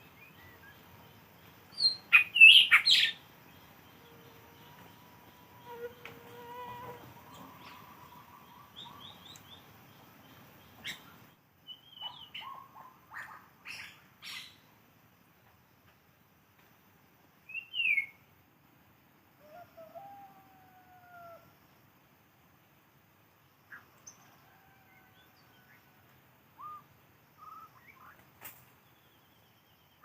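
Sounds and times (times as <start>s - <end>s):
birds chirping and whistling: 1.8s - 3.2s.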